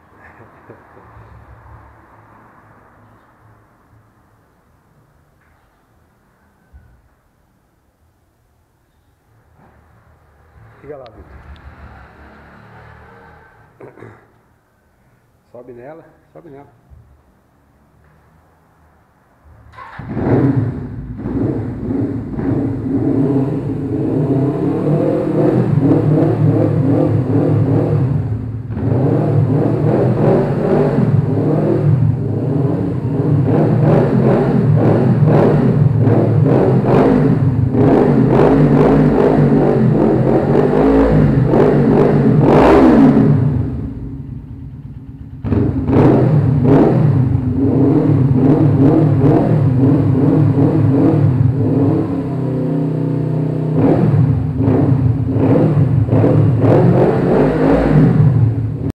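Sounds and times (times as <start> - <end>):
motorcycle engine revving: 9.6 - 14.1, 19.5 - 58.9.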